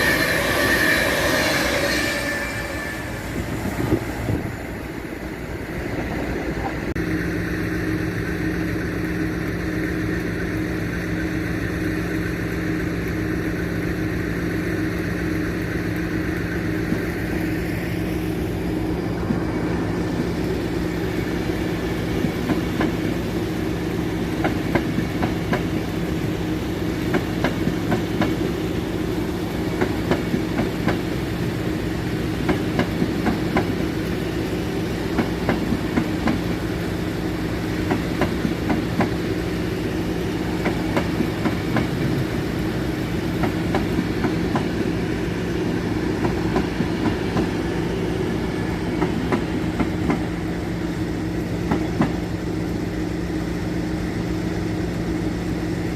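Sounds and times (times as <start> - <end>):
train running with low drone: 0.0 - 55.9
train wheels clicking over rail joints: 22.1 - 28.6, 29.3 - 50.5, 51.4 - 52.8.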